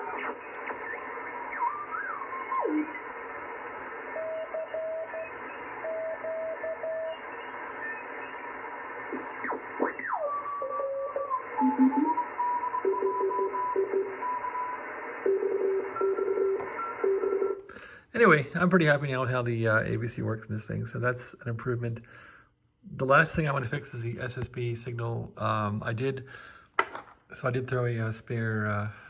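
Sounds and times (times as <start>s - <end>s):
radio band hiss: 0.0s - 10.2s, 14.0s - 15.2s
sliding radio whistles: 0.0s - 12.7s
morse code tones: 10.3s - 17.6s.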